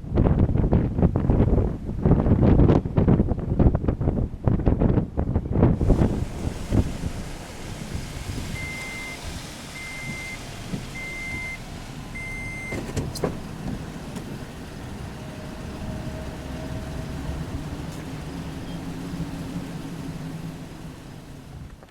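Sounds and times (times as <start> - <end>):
car engine humming: 4.9 - 21.9
car warning chime beeping: 8.4 - 13.0.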